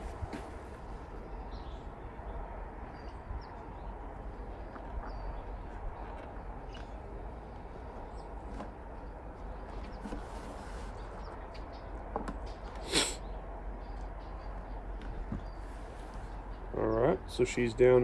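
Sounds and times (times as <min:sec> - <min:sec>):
scraping rustle: 0:09.7 - 0:11.3.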